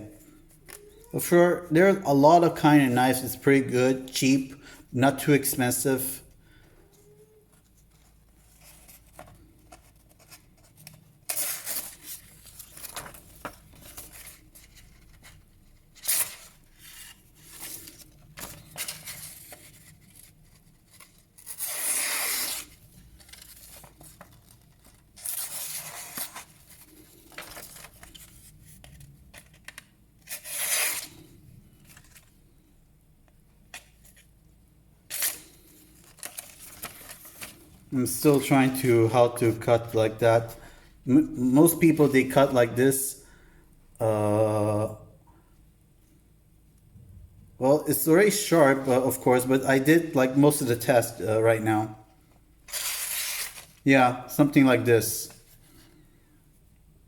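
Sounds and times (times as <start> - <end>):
paper rustling: 7.1 - 31.2, 35.1 - 40.6
knife slicing paper: 21.4 - 22.8, 30.3 - 31.2, 52.7 - 53.7.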